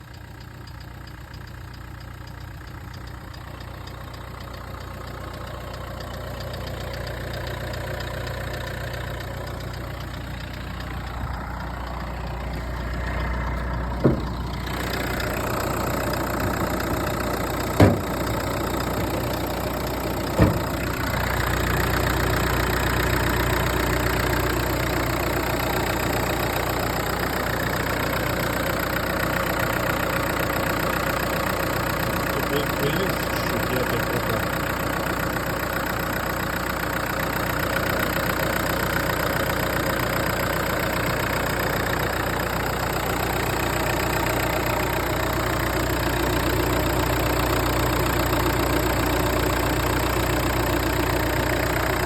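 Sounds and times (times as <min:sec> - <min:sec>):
diesel engine idling: 0:00.0 - 0:52.0
sharp engine knocks: 0:08.4 - 0:23.8.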